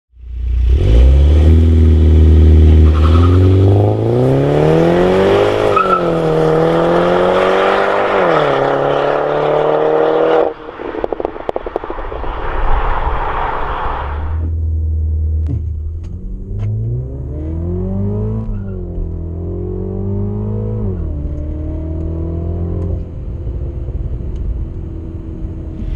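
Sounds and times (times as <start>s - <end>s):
car engine accelerating hard: 0.4s - 12.3s, 12.9s - 25.9s
exhaust crackling and popping: 10.2s - 16.9s.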